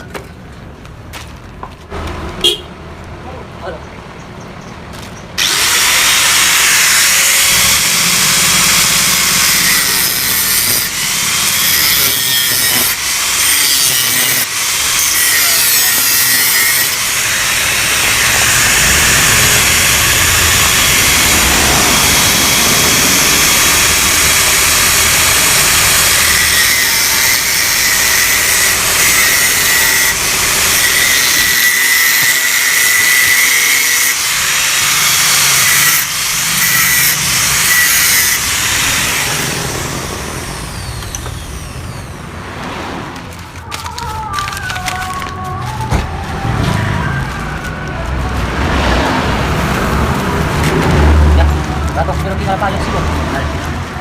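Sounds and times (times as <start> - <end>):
angle grinder cutting steel: 5.4 - 42.3.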